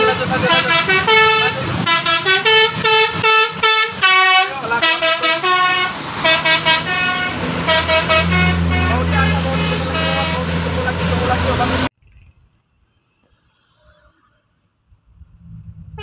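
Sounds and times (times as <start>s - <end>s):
multi-tone bus air horn tune: 0.0s - 11.2s
low rumble of bus engine: 0.0s - 16.0s.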